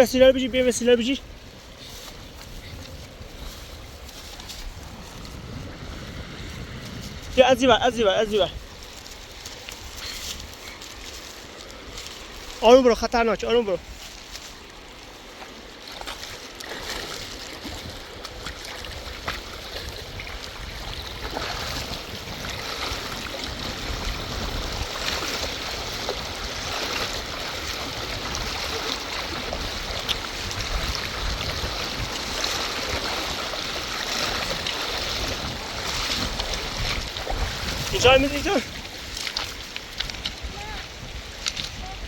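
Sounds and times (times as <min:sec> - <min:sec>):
rushing stream water: 0:00.0 - 0:42.0
small splashes and knocks: 0:13.9 - 0:41.9.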